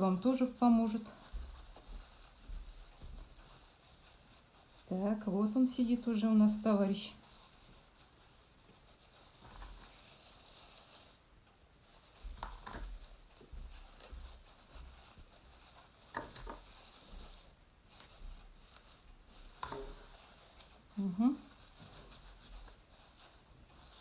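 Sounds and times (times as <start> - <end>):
soft rubbing of felted toy: 0.0 - 24.0.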